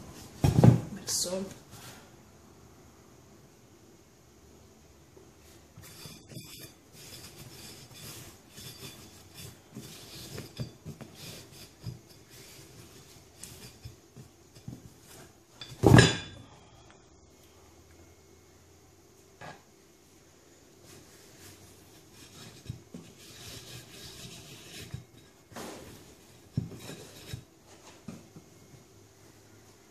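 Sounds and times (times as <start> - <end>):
clicks and scrapes handling tyre: 5.8 - 15.8, 21.5 - 28.0.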